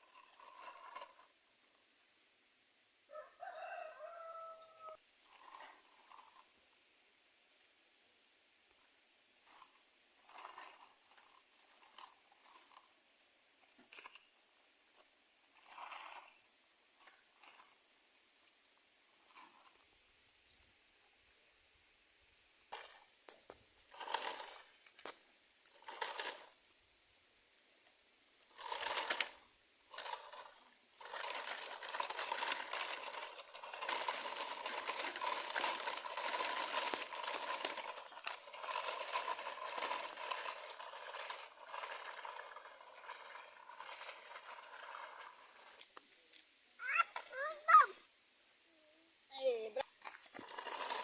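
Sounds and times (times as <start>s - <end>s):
plastic toy trucks rattling: 0.0s - 2.0s, 5.2s - 6.6s, 8.7s - 19.9s, 22.7s - 26.8s, 28.2s - 48.0s, 49.4s - 51.0s.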